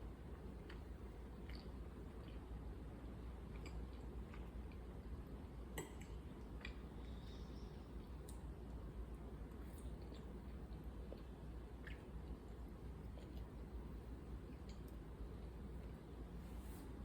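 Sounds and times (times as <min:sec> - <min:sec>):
steady low hum: 0:00.0 - 0:17.0
quiet chewing: 0:00.4 - 0:02.5, 0:03.4 - 0:05.2, 0:05.8 - 0:08.8, 0:09.5 - 0:16.0.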